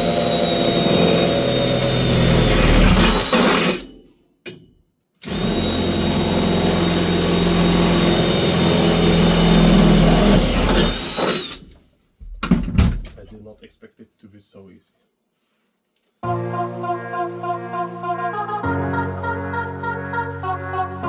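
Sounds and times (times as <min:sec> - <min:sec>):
power drill boring through metal: 0:00.0 - 0:04.0, 0:05.2 - 0:11.7.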